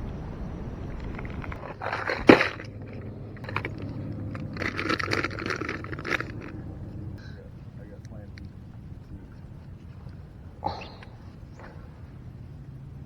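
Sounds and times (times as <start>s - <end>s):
wind on microphone: 0.0s - 7.2s
gear rattling and clattering: 1.0s - 7.2s.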